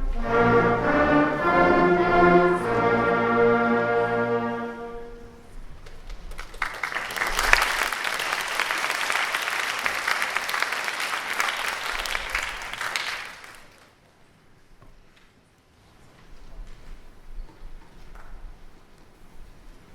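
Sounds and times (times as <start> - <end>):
audience applauding: 5.8 - 14.0.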